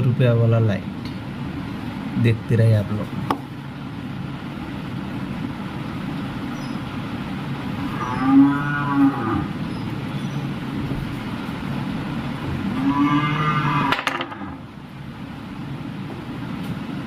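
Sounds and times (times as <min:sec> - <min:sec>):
steady low hum: 0:00.0 - 0:17.0
cow mooing: 0:07.8 - 0:09.6, 0:12.7 - 0:14.6.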